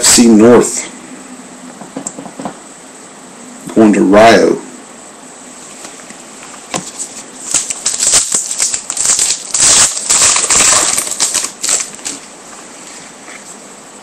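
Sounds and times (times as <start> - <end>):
foil wrapper crinkling: 6.8 - 12.2.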